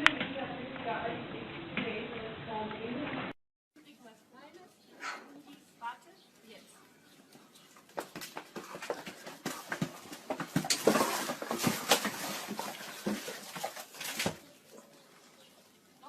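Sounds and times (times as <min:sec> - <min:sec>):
clattering knocks and scrapes: 0:07.9 - 0:14.4.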